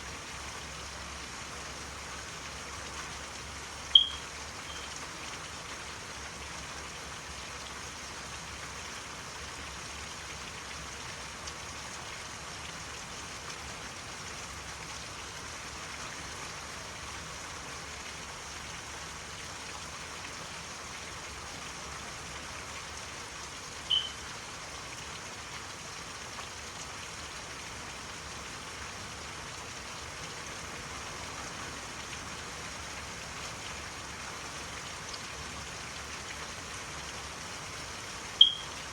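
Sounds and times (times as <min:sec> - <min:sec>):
steady rain: 0:00.0 - 0:38.9
short high chirp: 0:04.0 - 0:04.9, 0:23.9 - 0:24.2, 0:38.4 - 0:38.7.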